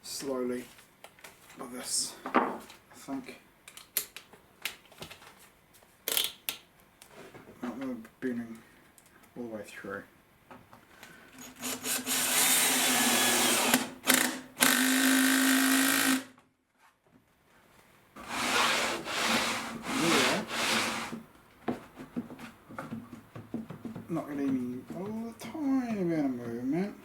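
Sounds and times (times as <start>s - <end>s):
power drill drilling into plywood: 11.6s - 16.3s.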